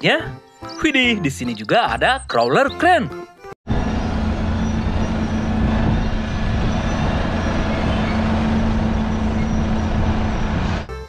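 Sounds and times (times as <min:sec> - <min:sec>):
vehicle engine running: 0:03.7 - 0:10.9.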